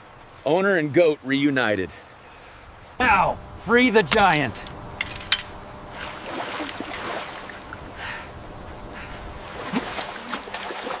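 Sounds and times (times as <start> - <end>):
water sloshing and lapping: 5.1 - 8.0, 9.0 - 11.0.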